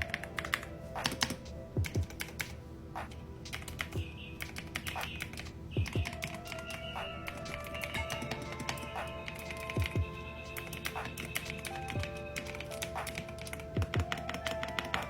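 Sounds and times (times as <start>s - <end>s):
background music: 0.0s - 15.0s
keyboard keystroke clacks: 0.0s - 15.0s.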